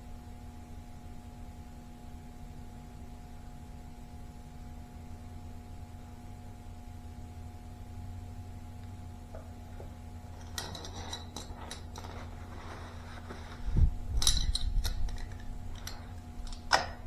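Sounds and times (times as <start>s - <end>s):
faint steady hum: 0.0s - 17.0s
metal tools clinking: 9.7s - 17.0s.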